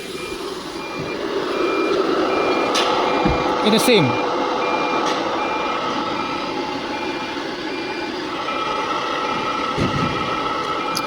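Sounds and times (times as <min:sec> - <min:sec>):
machinery humming: 0:00.0 - 0:11.0
high electronic beep: 0:00.1 - 0:08.6.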